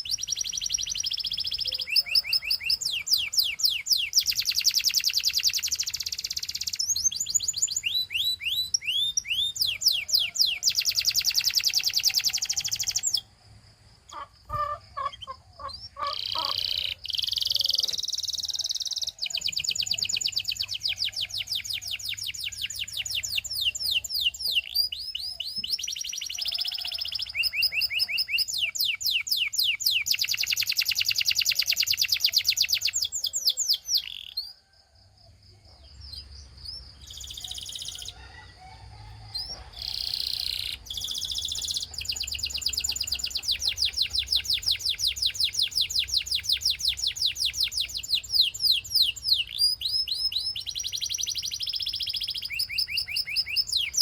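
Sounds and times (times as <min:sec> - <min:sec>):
canary singing rapid trills: 0:00.0 - 0:13.3, 0:14.1 - 0:34.6, 0:36.0 - 0:38.2, 0:39.4 - 0:54.0.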